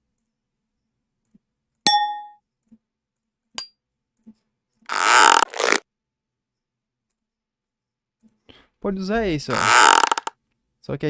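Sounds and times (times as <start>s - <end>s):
metallic ding: 1.9s - 2.4s.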